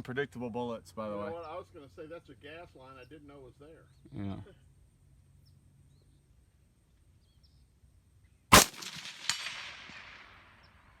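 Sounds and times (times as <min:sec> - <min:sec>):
quieter crack with echo: 0:08.5 - 0:11.0
rifle shot: 0:08.5 - 0:11.0.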